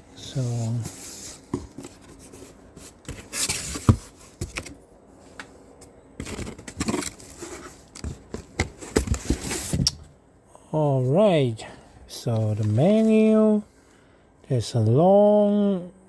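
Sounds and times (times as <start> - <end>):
packaging scraping and rustling: 6.2 - 9.9.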